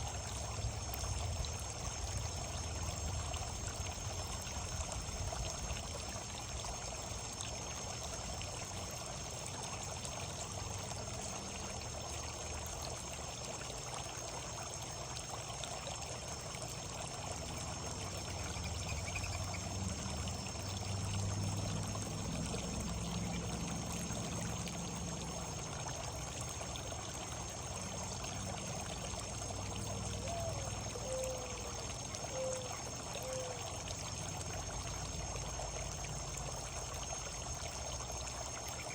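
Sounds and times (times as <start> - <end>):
trickling water: 0.0 - 38.9
faint bird calls: 30.2 - 33.7.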